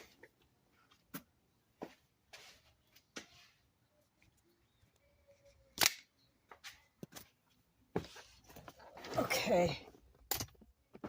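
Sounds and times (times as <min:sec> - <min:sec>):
soft rustle: 0:01.8 - 0:03.8.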